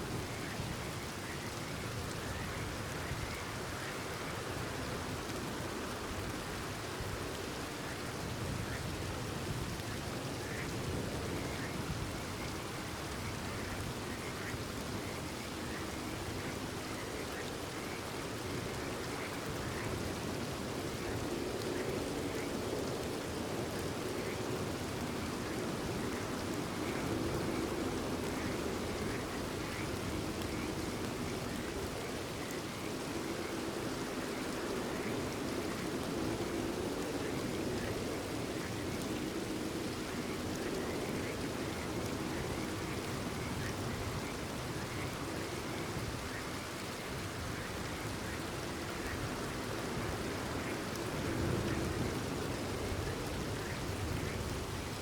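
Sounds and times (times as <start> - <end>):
frogs croaking: 0.0 - 6.8, 7.5 - 55.0
rain falling: 0.0 - 55.0.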